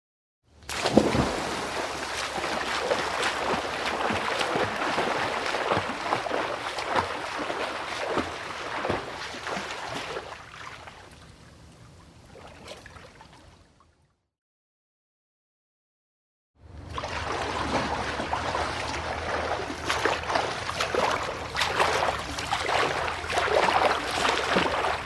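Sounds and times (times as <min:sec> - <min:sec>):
loud splash into pool: 0:00.7 - 0:10.9
swimming strokes splashing: 0:00.7 - 0:11.3, 0:16.8 - 0:25.0.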